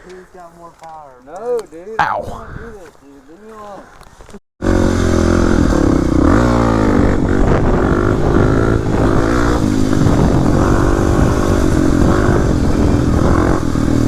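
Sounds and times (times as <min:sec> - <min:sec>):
dirt bike engine revving: 0:04.6 - 0:14.0.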